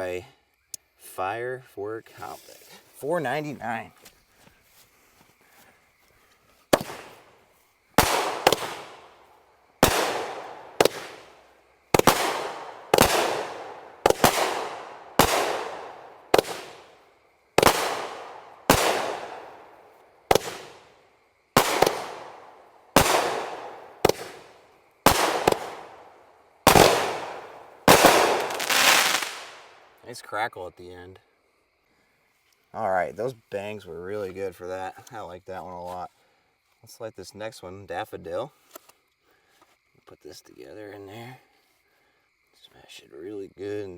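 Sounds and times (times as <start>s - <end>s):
firework shots banging: 6.7s - 7.2s, 8.0s - 9.2s, 9.8s - 17.0s, 17.6s - 19.7s, 20.3s - 20.9s, 21.5s - 29.8s
firework crackle: 6.8s - 7.3s, 8.0s - 9.2s, 9.8s - 17.0s, 17.6s - 19.7s, 20.3s - 20.9s, 21.5s - 29.9s.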